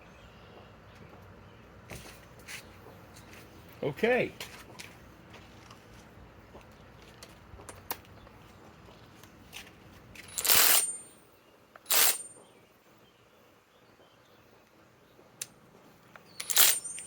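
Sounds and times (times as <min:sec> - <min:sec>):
impact wrench bursts: 0:10.2 - 0:11.1, 0:11.9 - 0:12.3, 0:16.3 - 0:17.0.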